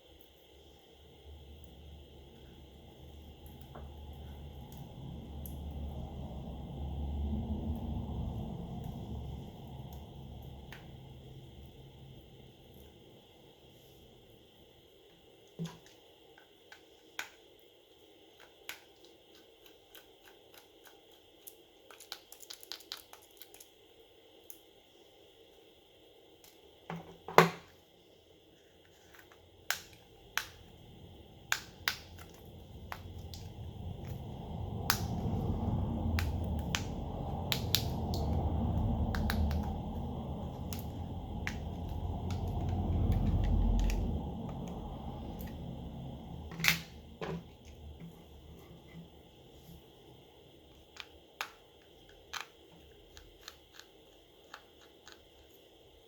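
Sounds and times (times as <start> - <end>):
low rumbling noise: 1.2 - 13.2, 30.1 - 50.7.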